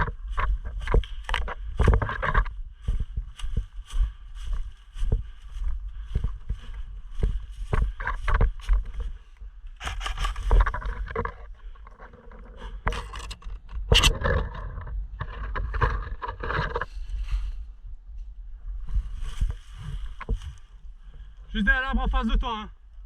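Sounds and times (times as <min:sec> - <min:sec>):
knocks and clicks: 0:09.8 - 0:16.8
camera handling rustling: 0:09.8 - 0:16.9.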